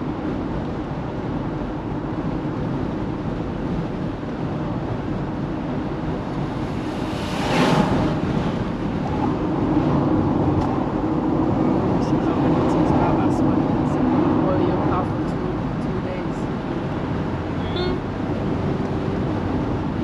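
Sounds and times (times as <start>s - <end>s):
car road and engine noise: 0.0s - 20.0s
brief whoosh: 6.7s - 8.2s.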